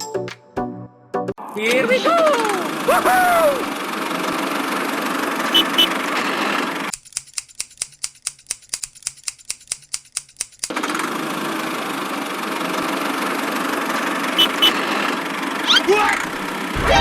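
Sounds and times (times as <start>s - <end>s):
machine running: 2.4s - 6.9s, 10.7s - 17.0s
rapid regular clicking: 6.9s - 11.0s.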